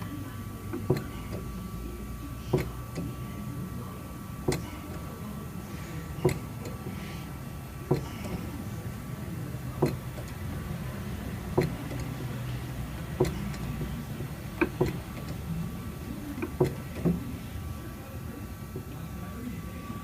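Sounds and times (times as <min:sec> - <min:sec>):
steady low hum: 0:00.0 - 0:20.0
sharp knocks or clicks: 0:09.8 - 0:10.4, 0:11.5 - 0:12.1, 0:13.2 - 0:15.4.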